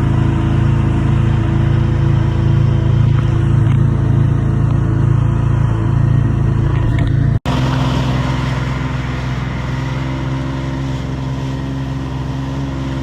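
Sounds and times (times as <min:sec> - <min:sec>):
jet ski engine running: 0:00.0 - 0:13.0.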